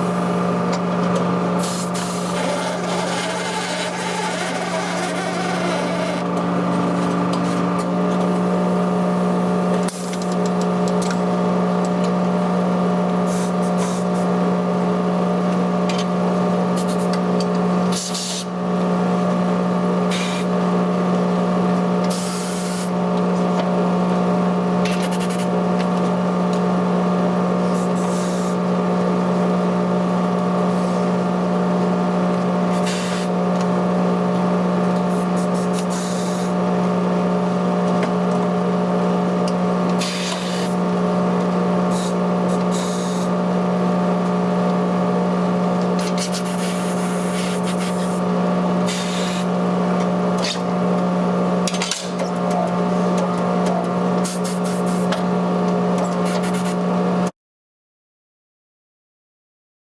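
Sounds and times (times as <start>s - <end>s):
machinery humming: 0.0s - 9.8s, 50.2s - 54.3s
compressed air hissing: 40.0s - 40.8s, 48.9s - 49.5s.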